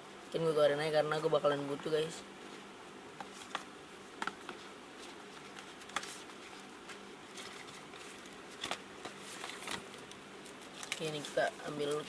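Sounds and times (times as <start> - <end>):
faint steady hum: 0.0 - 12.0
packaging rustling: 4.2 - 12.0.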